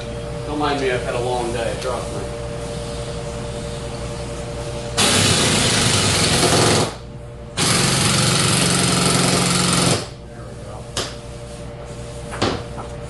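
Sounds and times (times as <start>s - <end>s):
pneumatic impact wrench hammering: 5.0s - 7.0s, 7.6s - 10.1s.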